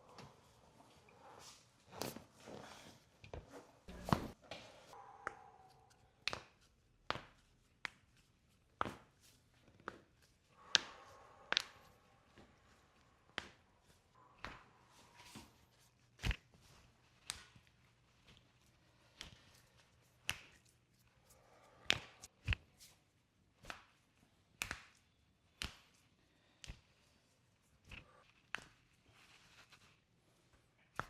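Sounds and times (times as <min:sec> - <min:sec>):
hands clicking and tapping on body: 0:05.2 - 0:31.0.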